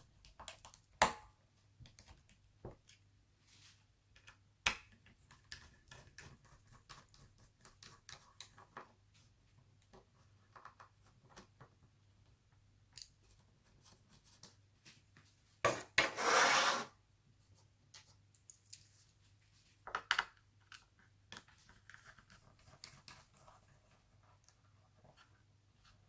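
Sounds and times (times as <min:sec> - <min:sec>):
small clicks and taps: 0:00.0 - 0:01.1
loud scrape: 0:16.0 - 0:17.0.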